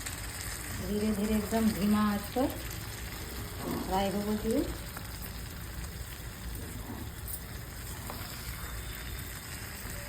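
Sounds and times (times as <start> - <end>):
chicken sizzling in oil: 0.0 - 10.0.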